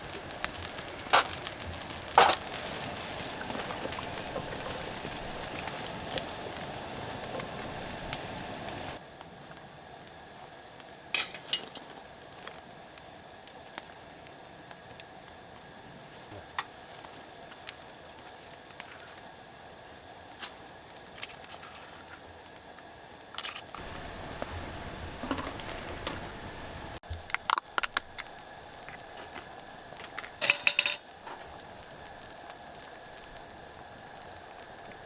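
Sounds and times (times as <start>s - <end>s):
faint hiss: 0.0s - 9.0s, 23.7s - 35.0s.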